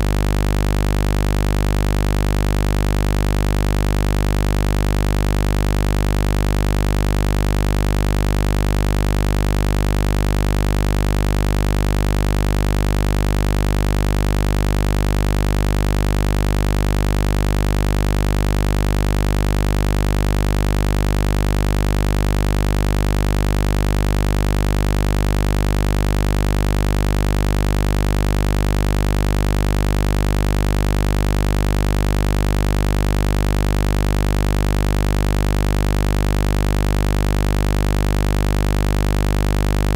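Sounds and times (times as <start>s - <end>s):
low electric buzz: 0.0s - 1.8s.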